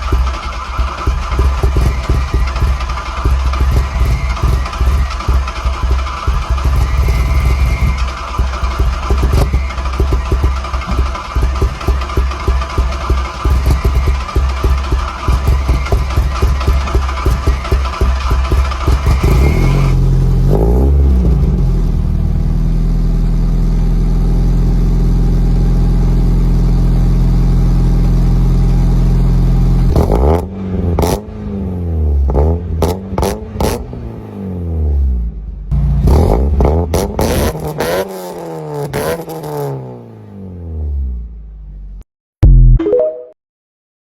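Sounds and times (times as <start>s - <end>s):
car engine revving: 0.0s - 22.6s, 29.5s - 41.3s.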